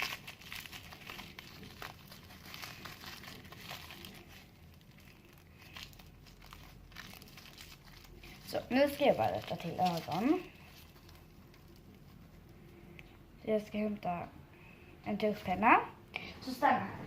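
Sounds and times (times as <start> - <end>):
stress ball crinkling: 0.0 - 13.3.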